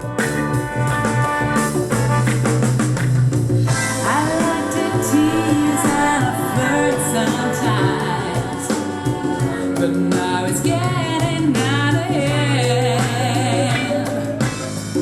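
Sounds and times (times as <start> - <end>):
pop-rock song with guitar and bass: 0.0 - 15.0
sliding melodic voice: 3.8 - 10.0.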